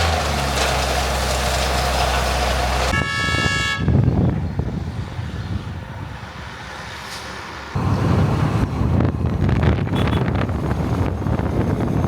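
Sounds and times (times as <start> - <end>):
low vehicle rumble: 0.0 - 12.0
vehicle horn: 2.9 - 4.0, 9.9 - 10.4
wind noise on microphone: 2.9 - 7.0, 7.7 - 12.0.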